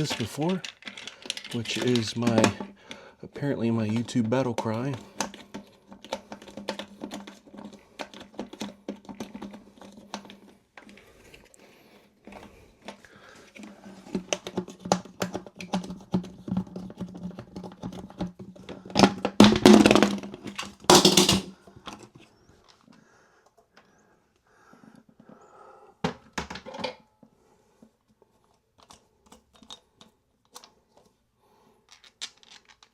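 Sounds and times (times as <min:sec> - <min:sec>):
toilet parts clicking and knocking: 0:00.0 - 0:03.0, 0:03.8 - 0:11.0, 0:13.6 - 0:22.1, 0:26.0 - 0:27.1.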